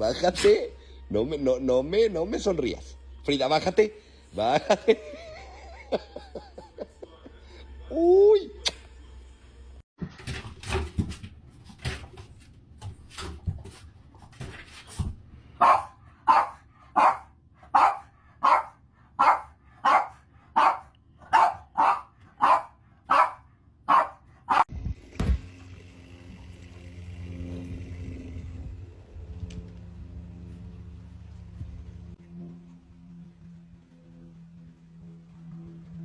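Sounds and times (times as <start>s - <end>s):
dog barking: 15.6s - 24.7s.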